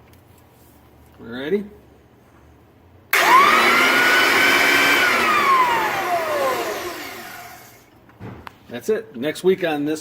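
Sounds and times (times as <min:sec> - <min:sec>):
electric motor whining and winding down: 0:03.2 - 0:07.9.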